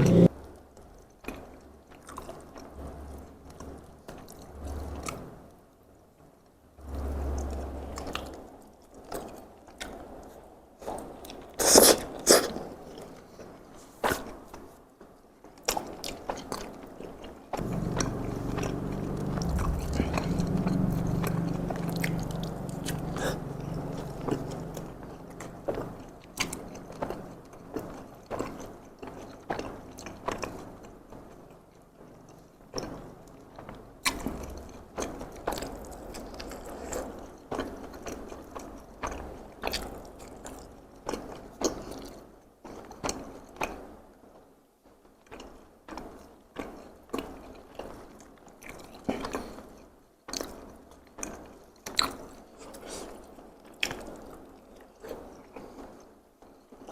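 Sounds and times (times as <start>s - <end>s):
low muffled sound: 0.0s - 0.3s, 17.6s - 26.2s
close-miked chewing: 0.1s - 5.4s, 6.9s - 14.7s, 15.4s - 43.9s, 45.2s - 56.9s.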